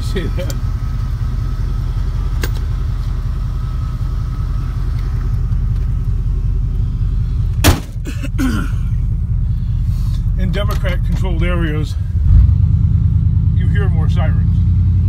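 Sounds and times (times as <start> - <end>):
vehicle engine rumbling: 0.0 - 15.0
loud sharp thump: 7.6 - 8.0.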